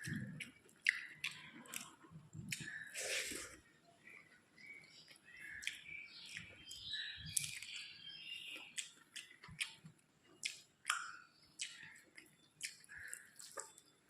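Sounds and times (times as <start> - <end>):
lip smacks: 0.0 - 3.6, 8.8 - 11.9, 12.6 - 13.8
person chewing: 0.0 - 3.6, 4.6 - 7.9, 8.5 - 13.9
tongue clicks: 5.6 - 7.8, 8.8 - 12.0.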